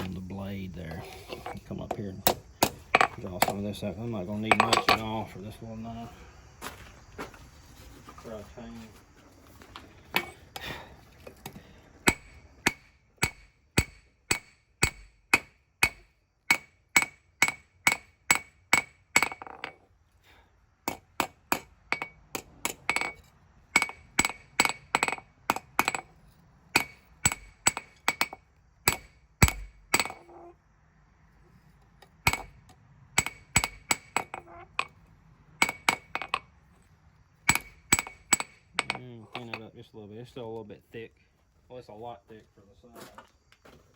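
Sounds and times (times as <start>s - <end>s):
hammer striking steel on anvil: 4.5s - 5.1s, 12.0s - 19.5s, 20.9s - 26.1s, 26.7s - 30.3s, 32.2s - 32.6s, 33.2s - 35.0s, 35.6s - 36.4s, 37.5s - 39.6s.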